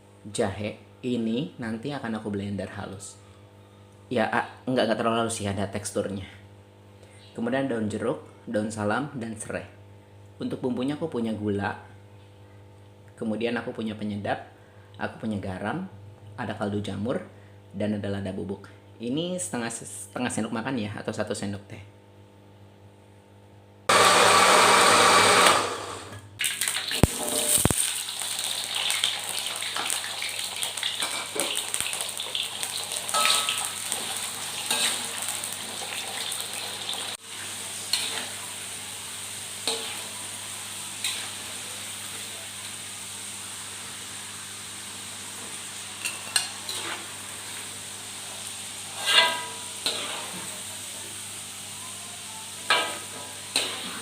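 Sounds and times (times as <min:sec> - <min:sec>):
food sizzling in hot oil: 0:26.4 - 0:54.0.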